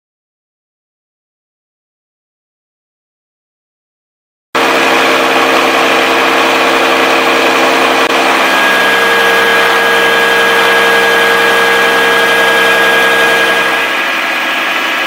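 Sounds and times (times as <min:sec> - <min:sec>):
high steady whine: 0:04.6 - 0:15.0
milling machine hum: 0:04.6 - 0:15.0.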